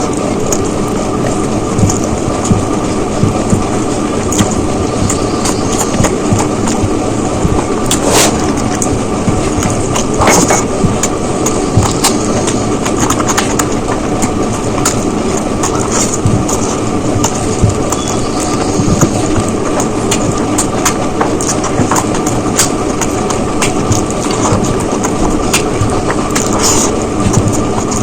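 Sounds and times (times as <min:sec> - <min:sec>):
chewing and mouth clicks: 0:00.0 - 0:28.0
loud rushing noise: 0:07.8 - 0:09.1.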